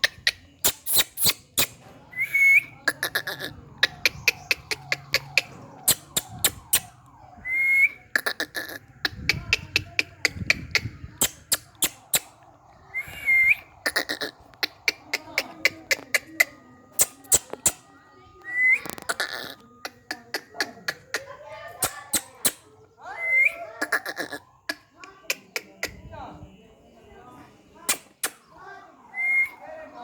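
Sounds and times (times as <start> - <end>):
parrot whistling: 0.0 - 24.4
sharp clicks: 3.8 - 7.0, 27.9 - 28.4.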